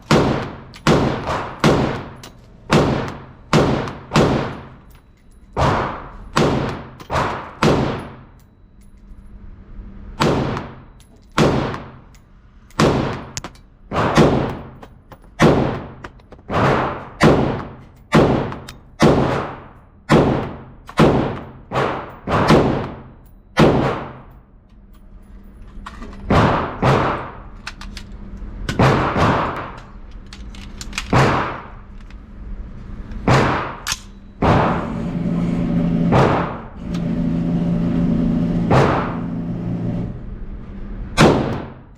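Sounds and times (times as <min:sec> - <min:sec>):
rifle gunshots: 0:00.0 - 0:04.7, 0:12.8 - 0:14.8, 0:15.4 - 0:23.0, 0:26.3 - 0:27.4, 0:28.8 - 0:29.8, 0:36.1 - 0:36.7, 0:41.2 - 0:41.8.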